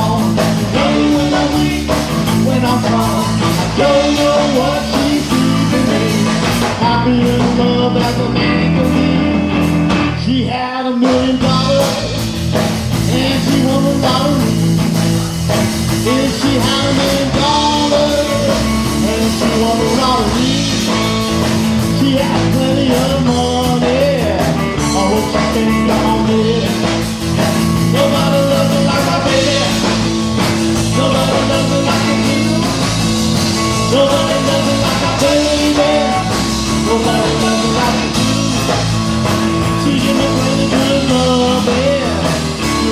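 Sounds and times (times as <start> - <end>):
bass guitar: 0.0 - 42.9
drums: 0.0 - 42.9
electric guitar: 0.0 - 42.9.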